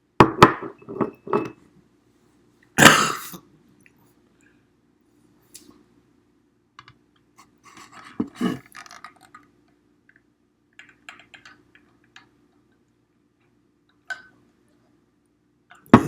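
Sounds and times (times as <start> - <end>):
small objects clicking and knocking: 7.9 - 9.5.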